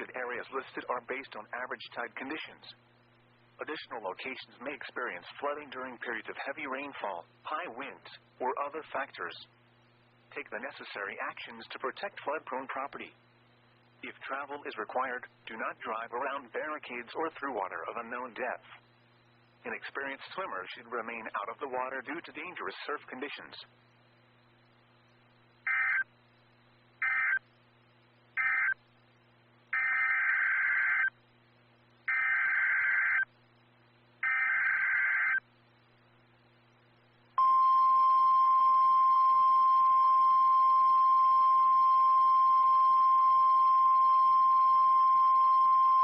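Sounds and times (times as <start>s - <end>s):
steady single-pitch alert tone: 37.4s - 46.0s.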